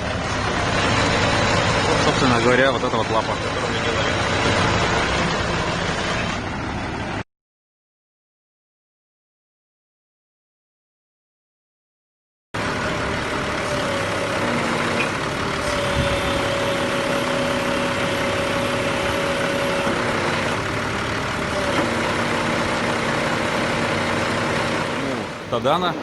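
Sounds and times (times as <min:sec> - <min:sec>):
hydraulic pump whining: 0:00.0 - 0:07.0, 0:12.6 - 0:26.0
truck engine running: 0:00.0 - 0:07.2, 0:12.6 - 0:26.0.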